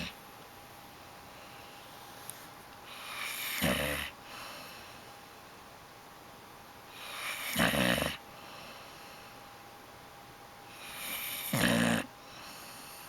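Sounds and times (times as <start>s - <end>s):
dog snoring: 2.9s - 4.2s, 6.9s - 8.2s, 10.7s - 13.0s.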